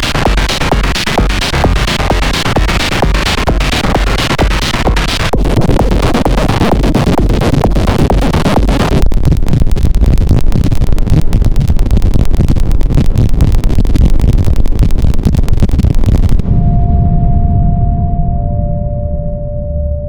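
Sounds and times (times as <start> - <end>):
electronic industrial music: 0.0 - 9.1.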